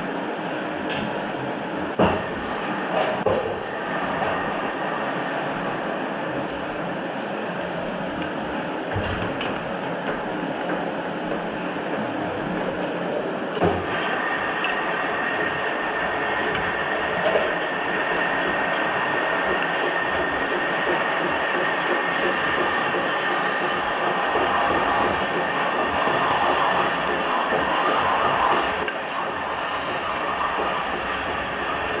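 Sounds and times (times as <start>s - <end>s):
lathe machining metal: 12.8s - 32.0s
high-pitched whine: 18.9s - 32.0s.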